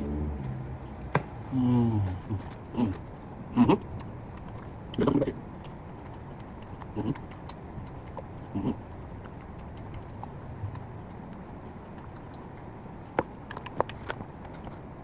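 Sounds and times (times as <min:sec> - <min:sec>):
steady background hum: 0:00.0 - 0:15.0
mouth noise: 0:06.7 - 0:07.5, 0:08.4 - 0:09.0.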